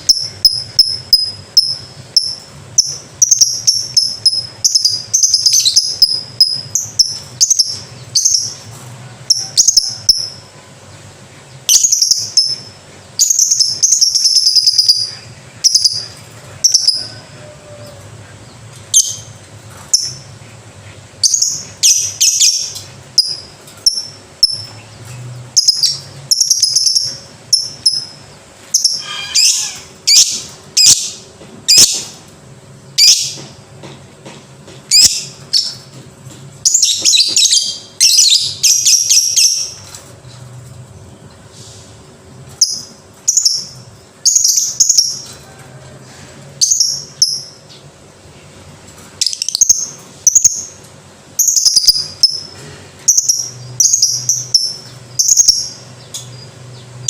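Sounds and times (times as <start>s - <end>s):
lovebird shrill chattering calls: 28.8s - 32.0s.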